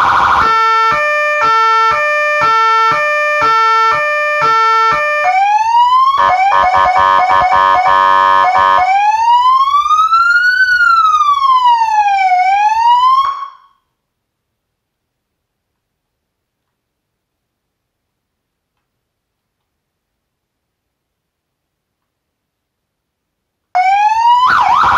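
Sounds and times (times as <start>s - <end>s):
electronic police siren: 0.0s - 13.8s, 23.8s - 24.9s.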